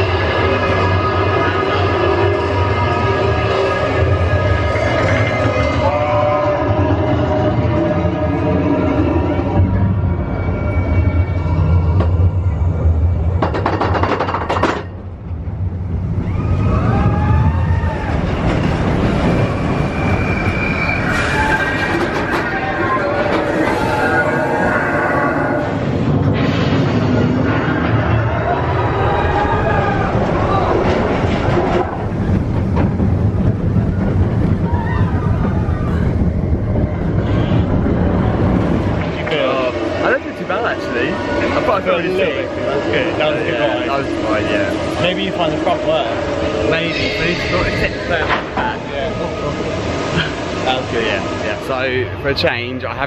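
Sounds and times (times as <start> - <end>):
high squeal: 0.0 - 12.8, 16.2 - 25.8, 39.2 - 52.2
roller coaster rumbling on track: 0.0 - 53.0
wind buffeting microphone: 30.0 - 46.7.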